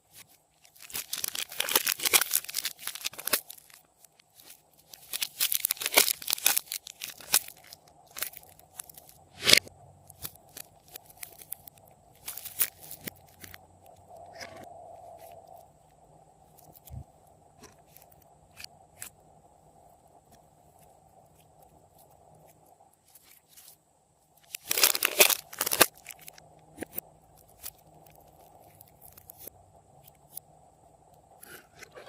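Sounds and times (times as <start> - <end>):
hard candy crunching: 0.6 - 13.9, 24.4 - 29.5.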